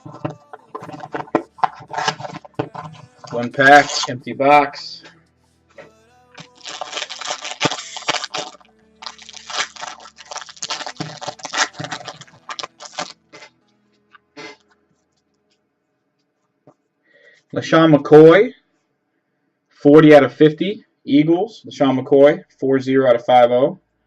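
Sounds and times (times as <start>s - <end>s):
wrapper crinkling and rustling: 0.0s - 4.2s, 5.8s - 15.3s.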